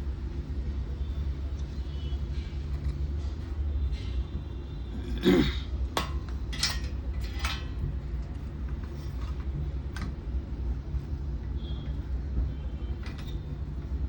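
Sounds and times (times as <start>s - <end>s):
small tools clinking on bench: 6.0s - 7.8s.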